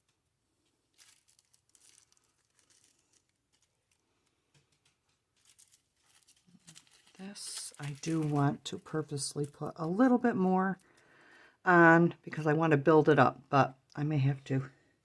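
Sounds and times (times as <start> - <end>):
tissue paper crinkling and tearing: 0.9 - 4.3, 5.3 - 11.0.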